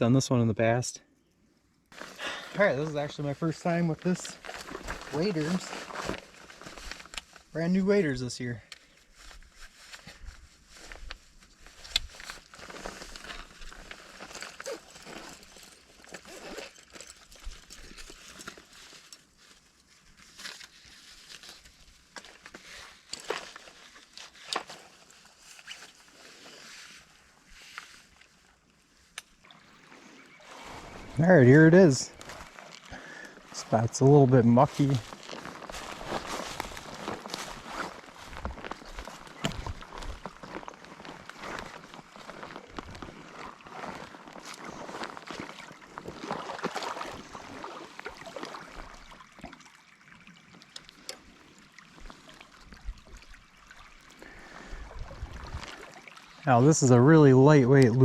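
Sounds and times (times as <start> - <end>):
clothing rustling: 1.9 - 7.8, 8.8 - 49.1
stream flowing: 29.2 - 58.0
water splashing from wading: 44.9 - 56.4.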